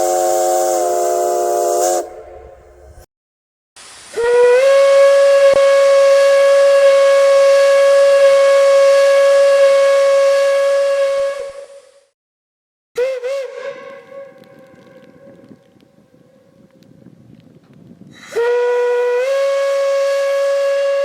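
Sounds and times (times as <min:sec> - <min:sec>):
steam hissing: 0:00.0 - 0:03.0
steam whistle blast: 0:00.0 - 0:03.1, 0:04.1 - 0:12.1, 0:13.0 - 0:15.6, 0:18.2 - 0:21.0.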